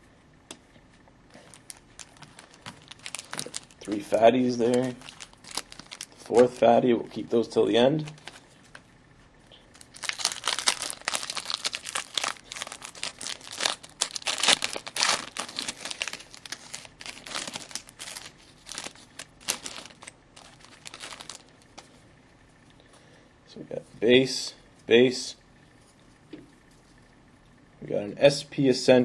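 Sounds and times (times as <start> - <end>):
foil wrapper tearing and crinkling: 1.4 - 6.6, 9.7 - 21.6.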